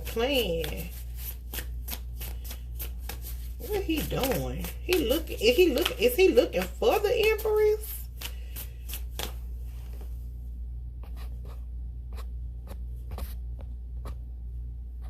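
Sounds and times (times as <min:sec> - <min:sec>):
scratching and clicking handling noise: 0:00.0 - 0:10.1
steady low hum: 0:00.0 - 0:15.0.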